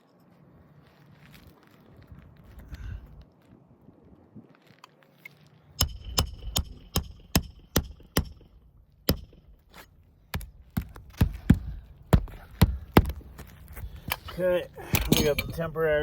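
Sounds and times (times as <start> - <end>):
hammer striking roofing nails: 5.8 - 9.7, 10.3 - 13.4.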